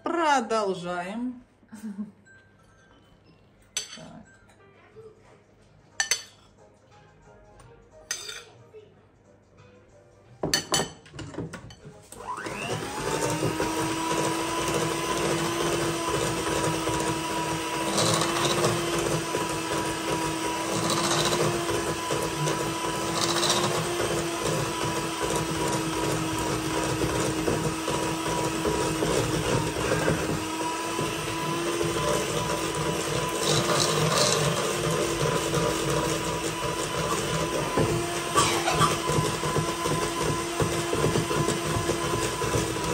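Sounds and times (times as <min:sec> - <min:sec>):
electric mixer humming: 0:12.1 - 0:42.9.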